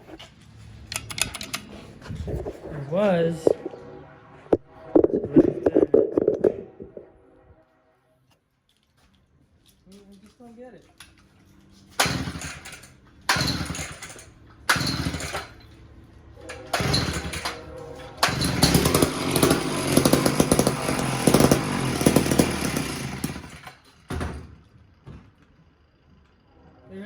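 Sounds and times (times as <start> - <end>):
chainsaw engine starting and running: 12.0 - 15.7, 16.5 - 24.4.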